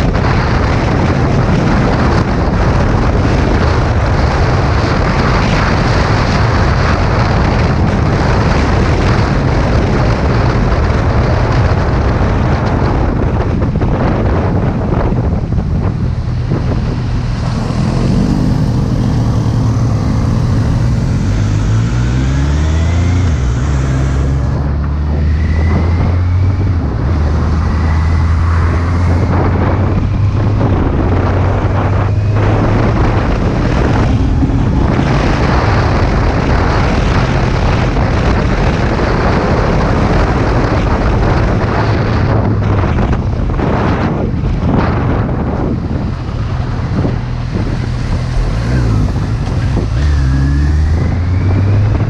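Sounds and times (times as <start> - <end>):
wind rushing over microphone: 0.0 - 52.0
motorcycle engine running: 28.3 - 52.0.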